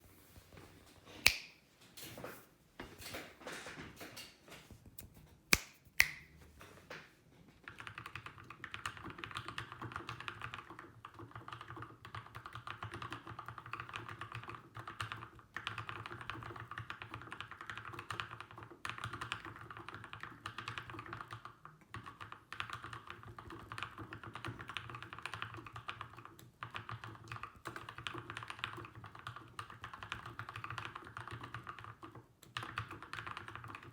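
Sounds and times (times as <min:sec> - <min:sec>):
mechanical keyboard typing: 0:07.7 - 0:33.9.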